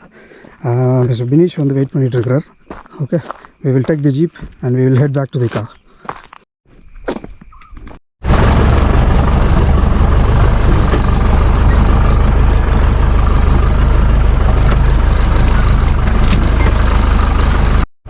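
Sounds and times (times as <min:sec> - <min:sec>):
jeep engine and road rumble: 0:08.3 - 0:17.9.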